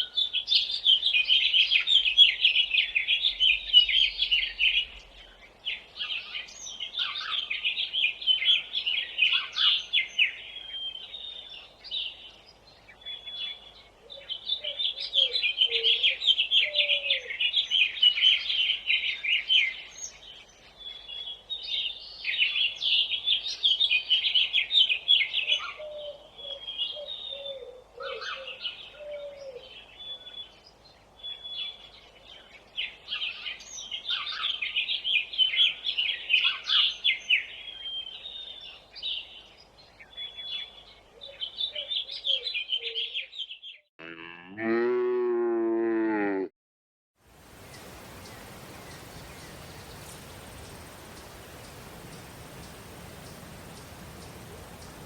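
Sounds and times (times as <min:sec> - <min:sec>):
songbirds chirping: 0:00.0 - 0:43.9, 0:47.3 - 0:55.0
lower warbling bird call: 0:47.4 - 0:55.0.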